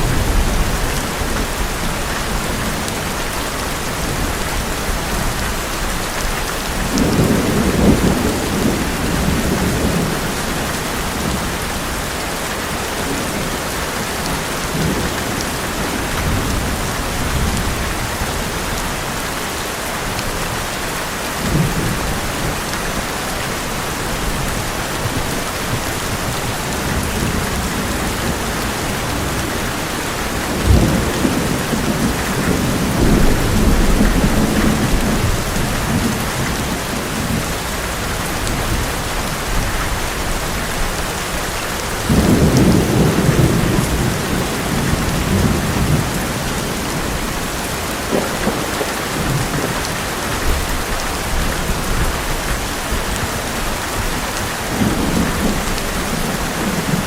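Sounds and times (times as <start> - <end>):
thunder rumbling: 0.0 - 11.9, 23.8 - 39.7, 41.9 - 57.0
heavy rain on metal roof: 0.0 - 57.0.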